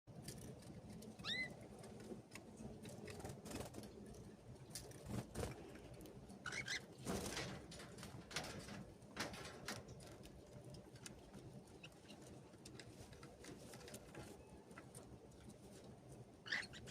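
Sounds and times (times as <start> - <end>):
birds rustling: 0.1 - 16.9
canaries chirping: 1.0 - 1.7, 6.3 - 7.1, 11.7 - 12.4, 16.4 - 16.9.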